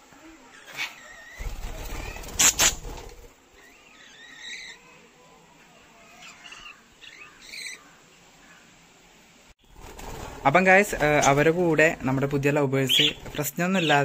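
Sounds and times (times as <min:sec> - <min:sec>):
lovebirds chirping and squawking: 0:00.2 - 0:05.1, 0:05.8 - 0:08.7, 0:12.8 - 0:14.0.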